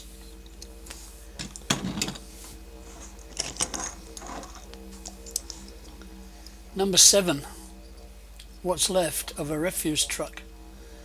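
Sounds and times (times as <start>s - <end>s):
steady low hum: 0.0s - 11.0s
metal toy trucks clicking: 3.4s - 4.7s.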